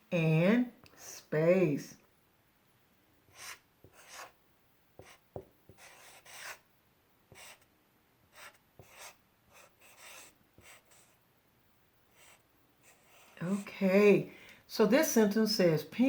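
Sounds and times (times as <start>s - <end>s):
pen scratching while writing: 3.3s - 4.4s, 5.0s - 6.6s, 7.3s - 7.7s, 8.3s - 11.2s, 12.1s - 13.7s.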